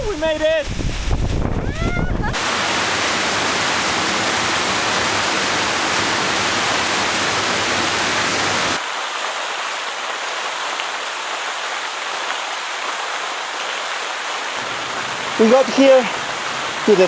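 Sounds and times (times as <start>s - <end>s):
waterfall roaring: 1.7s - 17.0s.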